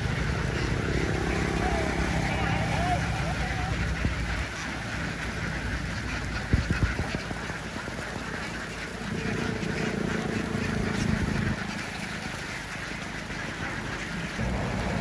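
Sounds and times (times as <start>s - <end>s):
low steady hum: 0.0s - 9.7s
flock of ducks quacking: 0.0s - 15.0s.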